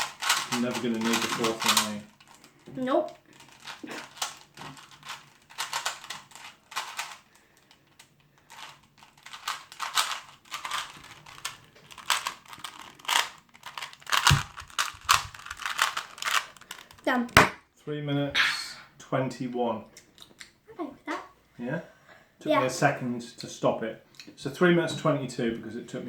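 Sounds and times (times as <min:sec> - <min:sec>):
plastic puzzle cube clicking: 0:08.6 - 0:17.0
heavier knock: 0:17.3 - 0:17.6.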